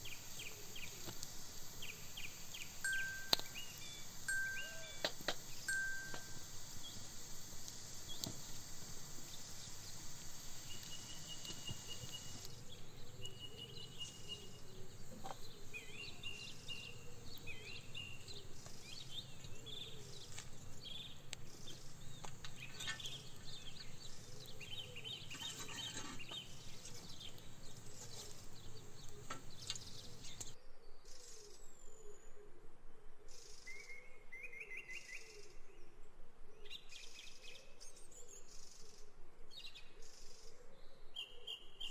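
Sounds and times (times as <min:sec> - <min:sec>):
small birds chirping: 0:00.0 - 0:30.6
outdoor background noise: 0:00.0 - 0:41.9.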